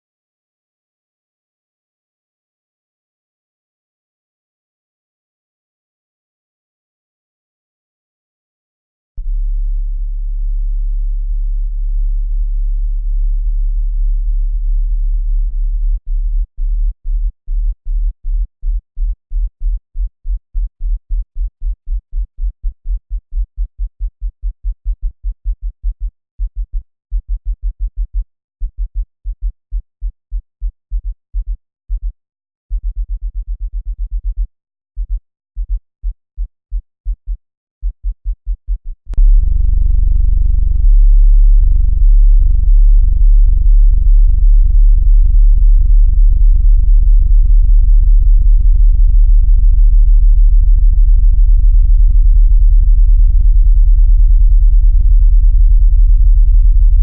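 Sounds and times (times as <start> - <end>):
very low-pitched pulsing hum: 9.2 - 22.6, 39.1 - 57.0.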